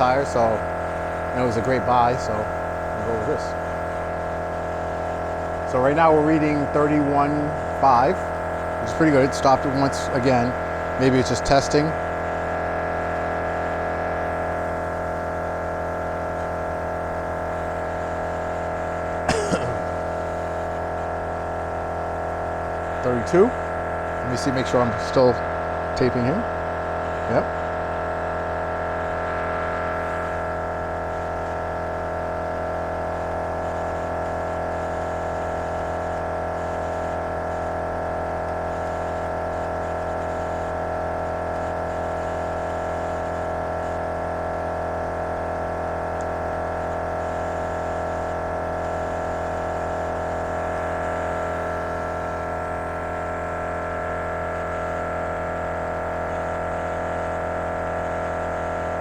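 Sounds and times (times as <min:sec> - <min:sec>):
air compressor droning: 0:00.0 - 0:59.0.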